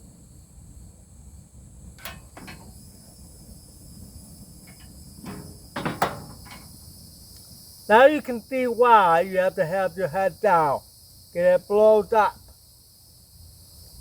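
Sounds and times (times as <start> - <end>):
grill lighter clicking: 2.0 - 2.8.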